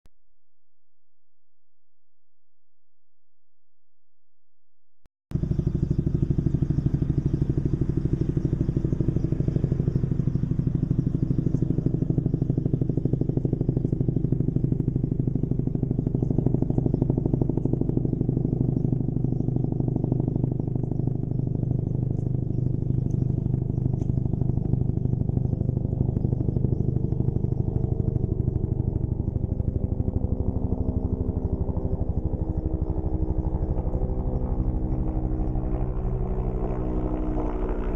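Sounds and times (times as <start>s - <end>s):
turbine hum: 5.3s - 37.9s
helicopter rotor chop: 5.4s - 37.9s.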